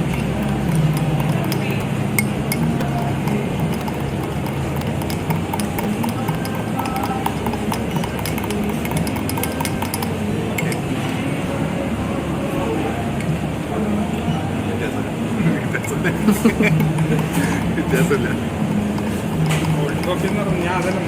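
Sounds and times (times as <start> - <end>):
spoon stirring in a cup: 0.0 - 11.2, 15.7 - 21.0
food court hubbub: 0.0 - 21.0.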